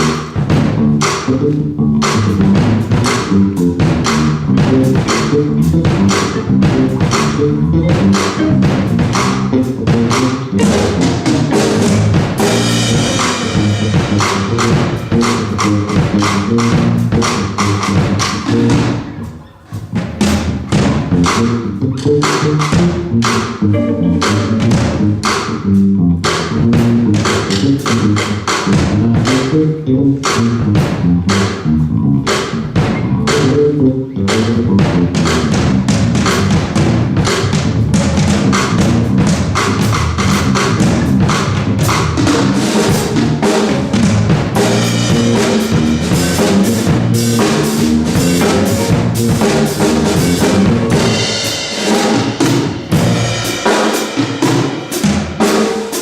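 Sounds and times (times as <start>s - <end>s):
electric bass: 0.0s - 55.4s
drum kit groove: 0.0s - 56.0s
electric guitar: 0.0s - 56.0s.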